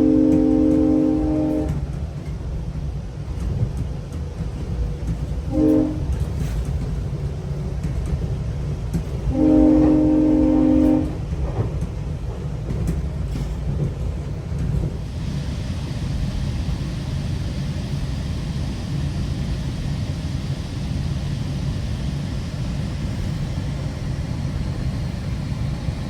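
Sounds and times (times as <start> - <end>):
train horn blasts: 0.0 - 1.8, 5.5 - 6.2, 9.3 - 11.3
train rumbling on rails: 0.0 - 26.0.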